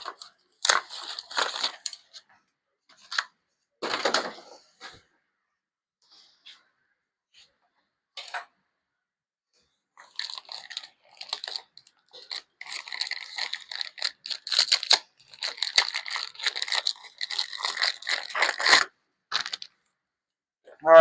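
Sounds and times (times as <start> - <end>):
packing paper ripped and crumpled: 0.0 - 2.0, 10.0 - 19.7.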